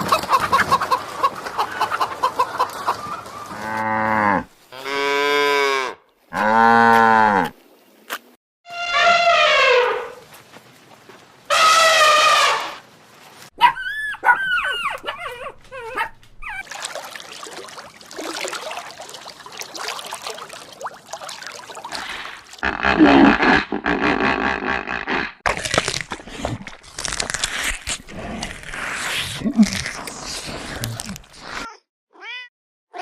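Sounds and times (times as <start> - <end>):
dog whining: 13.6 - 16.7
dog yelping: 13.6 - 16.7.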